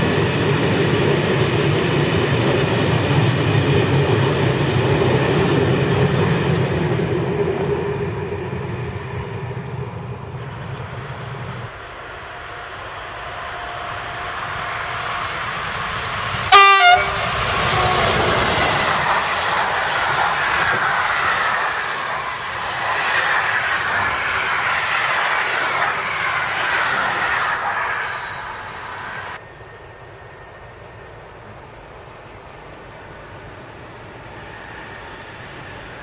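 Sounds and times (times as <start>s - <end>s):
train wheels running past: 0.0s - 36.0s
train horn blast: 16.4s - 19.0s.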